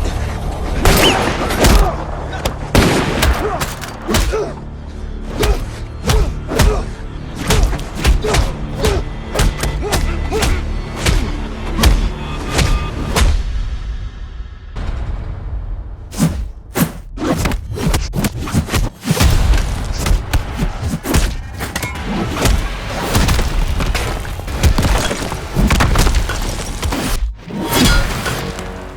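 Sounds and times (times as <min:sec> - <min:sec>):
dramatic music: 0:00.0 - 0:26.2
heavy thuds and booming hits: 0:00.8 - 0:04.7, 0:05.3 - 0:27.2
crashing and shattering impacts: 0:00.9 - 0:04.5, 0:19.1 - 0:28.9.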